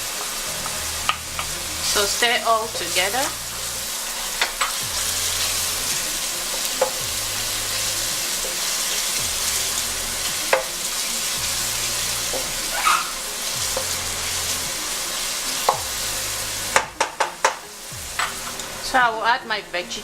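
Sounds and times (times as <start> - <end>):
onion sizzling in hot oil: 0.0 - 20.0
spoon knocking against pot: 16.8 - 17.6.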